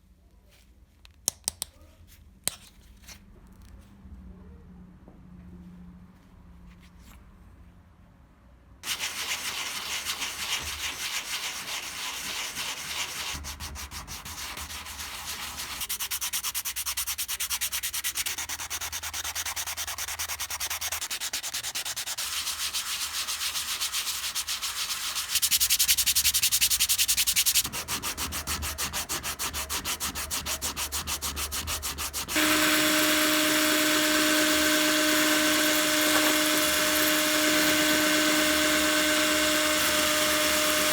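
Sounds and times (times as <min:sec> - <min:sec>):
sandpaper rasping: 0:08.8 - 0:40.9
power tool motor whine: 0:32.3 - 0:40.9.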